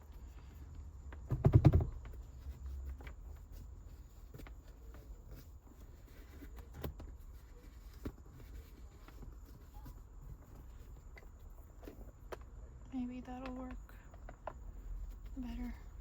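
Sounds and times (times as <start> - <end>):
rope rubbing and handling: 2.1 - 12.2.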